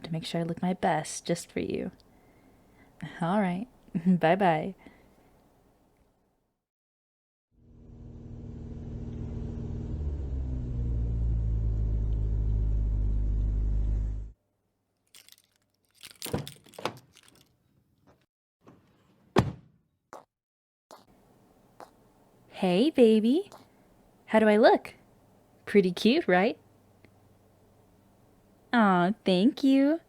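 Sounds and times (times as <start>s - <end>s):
car engine running: 7.6s - 14.3s.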